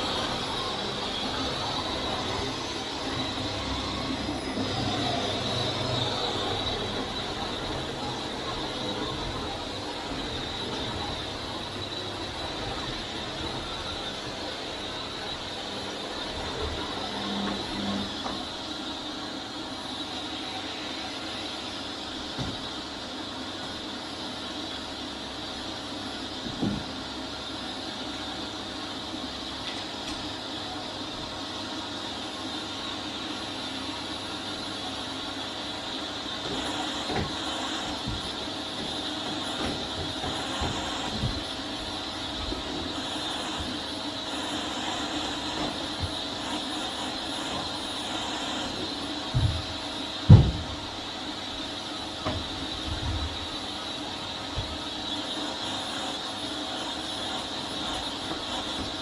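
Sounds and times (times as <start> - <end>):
upright vacuum cleaner running: 0.0 - 59.0
vacuum cleaner knocks: 36.4 - 42.9, 48.6 - 51.1.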